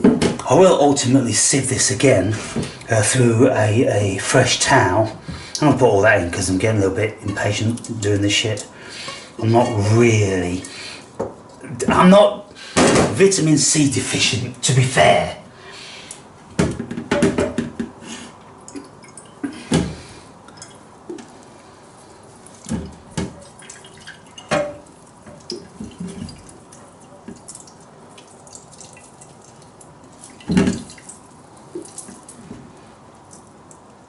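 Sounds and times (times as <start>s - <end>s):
liquid dripping through strainer: 20.4s - 34.0s.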